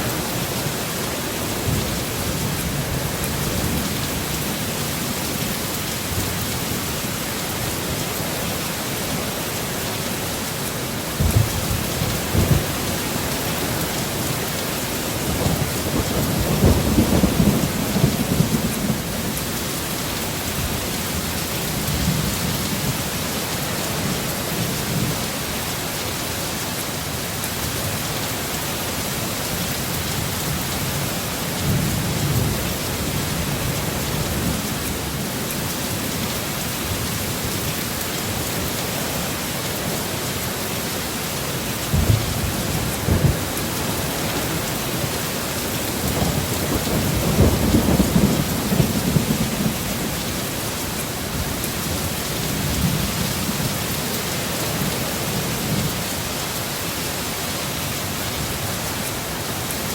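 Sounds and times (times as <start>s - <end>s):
heavy rain: 0.0s - 59.9s
thunder rumbling: 11.2s - 13.4s, 41.9s - 50.4s.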